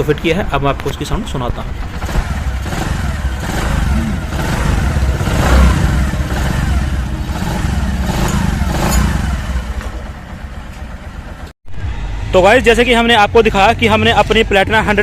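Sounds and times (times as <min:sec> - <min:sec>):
motorcycle engine running: 0:01.6 - 0:11.5.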